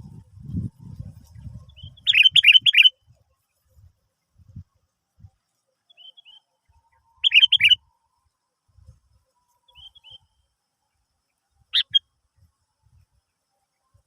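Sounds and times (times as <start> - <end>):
faint bird chirps: 0.8 - 14.0
bulbul calling: 1.7 - 3.0, 7.2 - 7.8, 9.7 - 10.3, 11.7 - 12.0.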